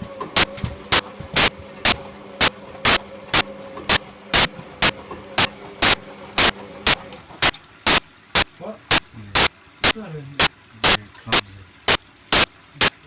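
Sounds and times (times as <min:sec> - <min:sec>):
washing machine humming: 0:00.0 - 0:13.0.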